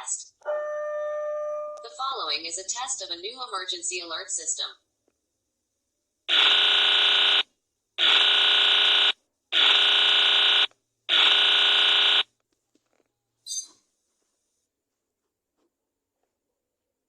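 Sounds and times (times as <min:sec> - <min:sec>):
emergency alert buzzer: 0:08.0 - 0:12.2.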